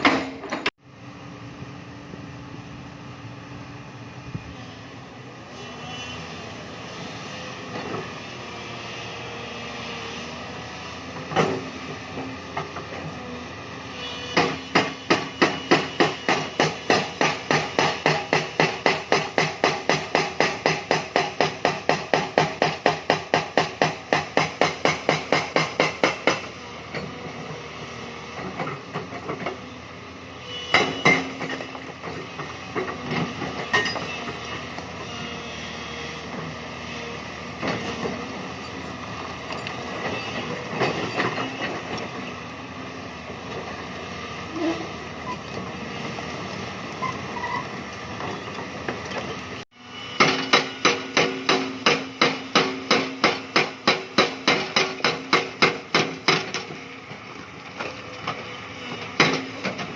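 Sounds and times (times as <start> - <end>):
diesel engine under load: 0.0 - 59.9
loud regular hammering: 14.4 - 26.5, 50.2 - 56.7.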